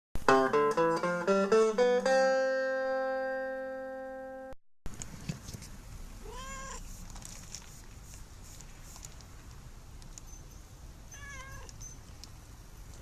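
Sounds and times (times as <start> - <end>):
cat meowing: 6.2 - 6.9, 11.1 - 11.8.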